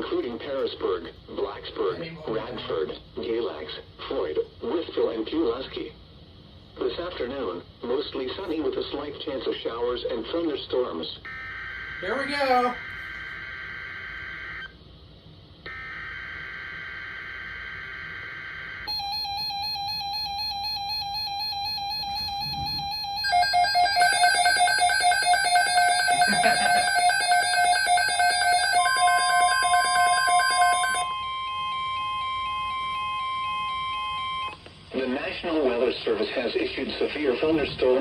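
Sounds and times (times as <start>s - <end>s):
steady weather radio warning tone: 11.3s - 14.7s, 21.9s - 35.4s
rapidly pulsing electronic beeping: 16.7s - 31.1s.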